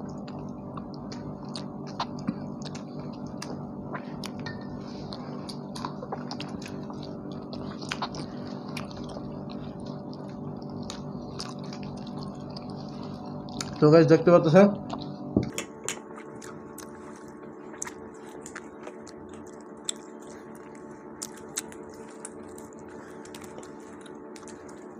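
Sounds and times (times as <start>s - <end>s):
people chewing food: 0.0s - 24.9s
steady background hum: 0.0s - 24.9s
mouth smacks and clicks: 17.8s - 24.9s.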